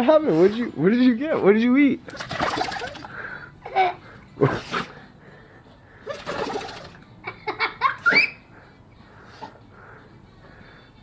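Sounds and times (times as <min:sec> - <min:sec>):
dog sneezing and snorting: 0:04.4 - 0:05.0.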